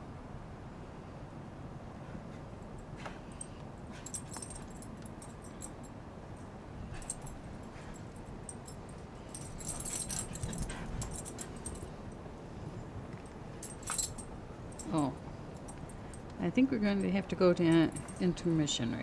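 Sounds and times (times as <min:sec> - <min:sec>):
dog collar tags jingling: 0:02.8 - 0:19.0
wind rumble on microphone: 0:10.2 - 0:11.8.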